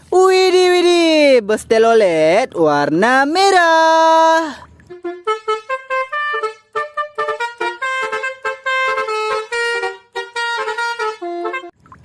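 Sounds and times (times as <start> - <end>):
bus horn playing a tune: 4.9 - 11.8.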